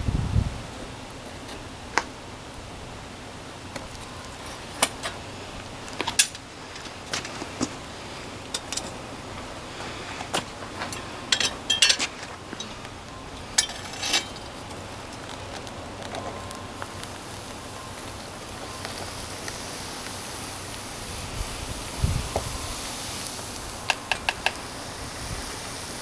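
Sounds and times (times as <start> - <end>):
steady hiss: 0.0 - 26.0
metal pieces clinking together: 10.7 - 16.6.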